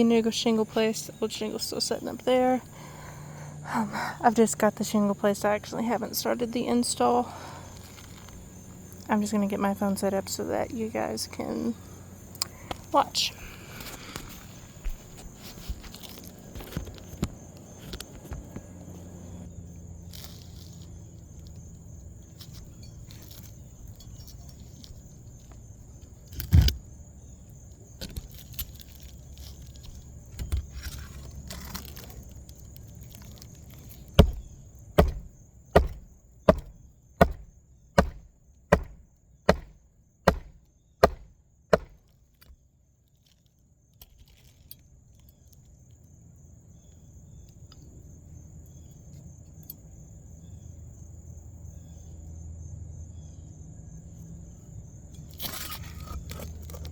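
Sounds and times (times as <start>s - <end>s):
hammer blows on nail: 35.0s - 42.0s.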